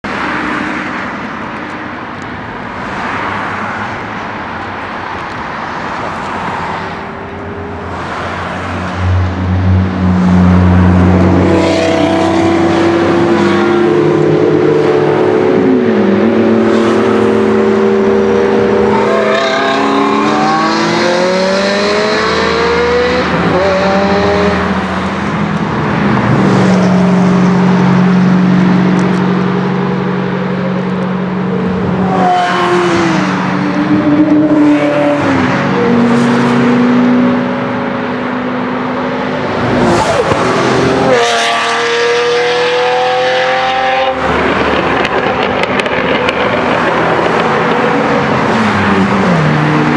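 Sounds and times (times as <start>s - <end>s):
sports cars rushing past: 0.1s - 49.9s
sports car engine revving: 9.6s - 25.6s, 26.2s - 49.9s.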